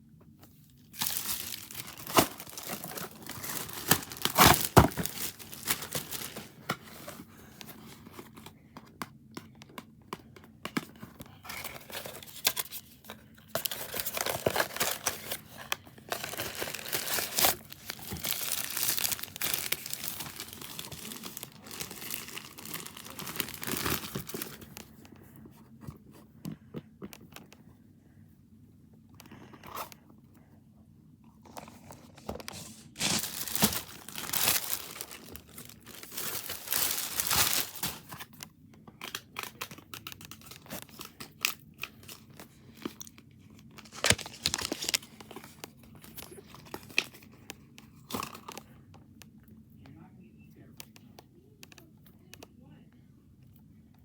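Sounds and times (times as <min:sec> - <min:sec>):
crinkling and tearing: 0:00.9 - 0:07.7, 0:11.3 - 0:25.1, 0:31.5 - 0:47.4.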